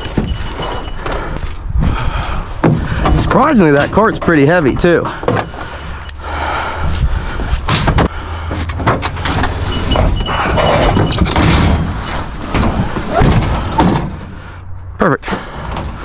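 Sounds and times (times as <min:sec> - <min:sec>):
metal scraping: 0:08.6 - 0:12.3.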